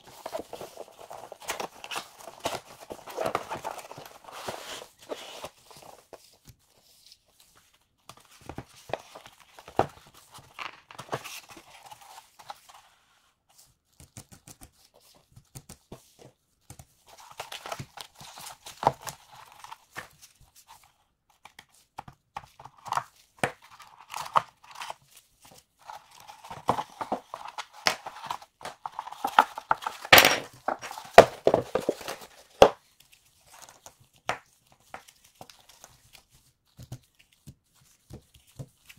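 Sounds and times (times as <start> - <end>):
plastic and cardboard rustling: 0.0 - 14.0, 21.7 - 38.9.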